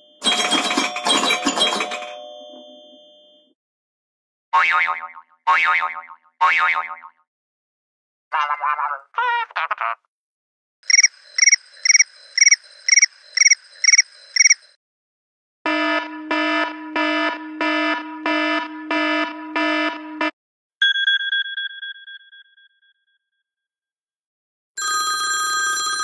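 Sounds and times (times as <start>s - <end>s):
quick chirping beeps: 10.9s - 14.7s.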